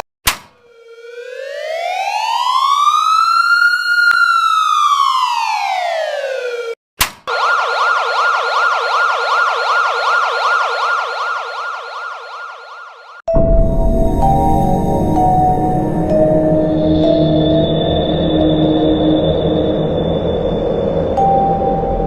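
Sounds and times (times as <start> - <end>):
fast siren yelp: 0.6 - 13.2
electronic siren wail: 0.6 - 22.0
music: 13.3 - 22.0.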